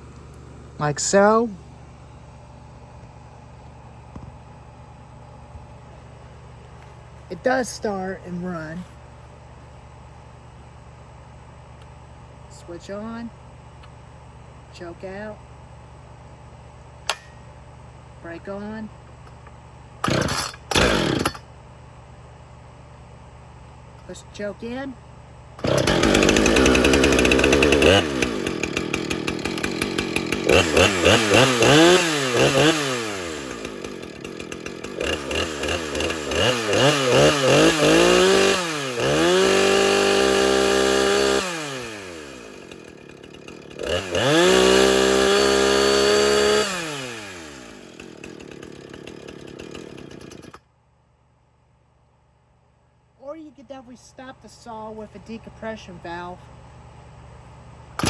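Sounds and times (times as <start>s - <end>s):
chainsaw engine revving: 20.0s - 21.5s, 25.6s - 50.6s.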